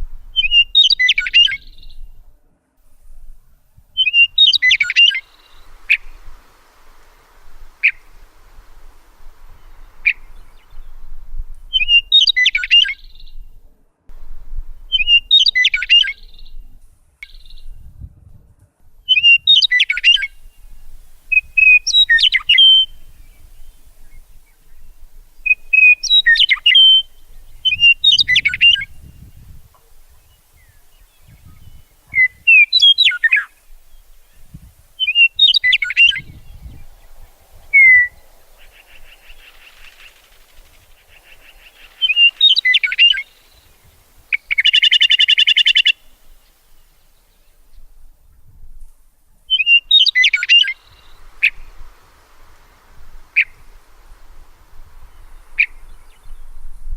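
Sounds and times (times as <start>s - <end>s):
songbird chirping song: 0.0s - 56.9s.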